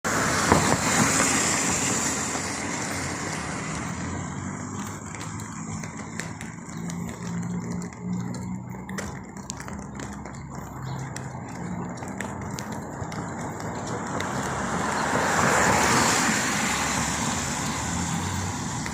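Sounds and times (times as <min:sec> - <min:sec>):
tyre hiss on wet road: 0:00.1 - 0:03.8
low engine hum: 0:00.1 - 0:18.9.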